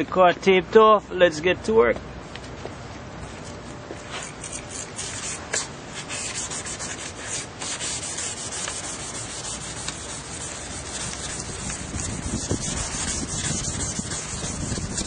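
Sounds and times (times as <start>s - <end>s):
sandpaper rubbing on plastic: 4.1s - 15.0s.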